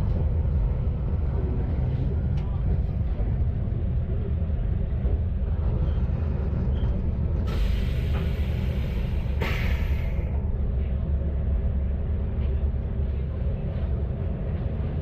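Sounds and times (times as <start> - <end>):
diesel railcar engine rumble: 0.0 - 15.0
compressed air hissing: 7.5 - 10.2.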